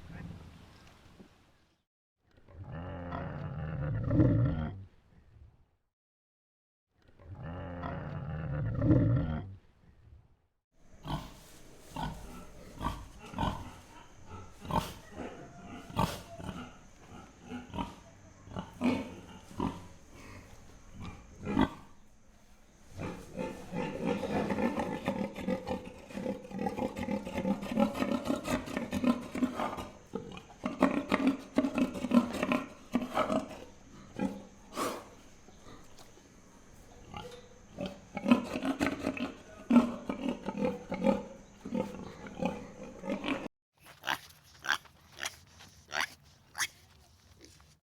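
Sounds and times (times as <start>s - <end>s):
pigs grunting: 2.5s - 4.8s, 7.2s - 9.6s, 11.0s - 22.2s, 22.8s - 47.8s
loud pitched pig call: 43.8s - 46.8s.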